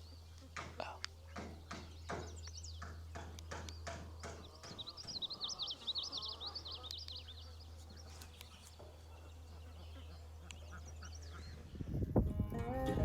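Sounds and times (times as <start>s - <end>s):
small birds chirping: 0.0s - 12.2s.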